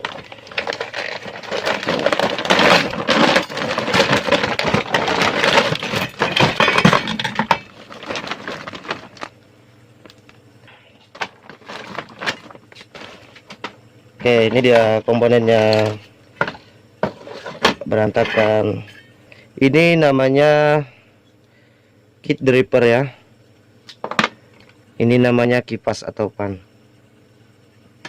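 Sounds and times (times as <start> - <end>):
parts clattering and clinking: 0.0 - 9.3, 15.6 - 19.2.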